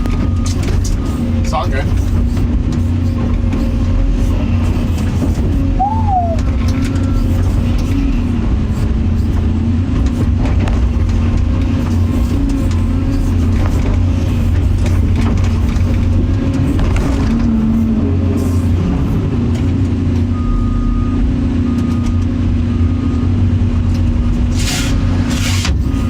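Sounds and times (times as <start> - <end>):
diesel engine drone: 0.0 - 26.0
short high beeps: 5.8 - 7.2.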